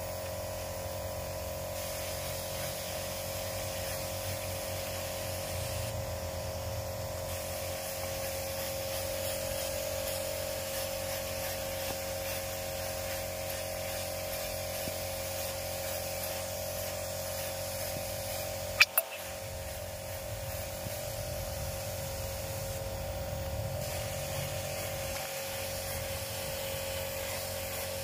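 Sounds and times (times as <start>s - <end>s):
paint spraying hiss: 0.0s - 28.0s
steady hum: 17.9s - 23.6s
sharp clicks: 18.8s - 19.3s.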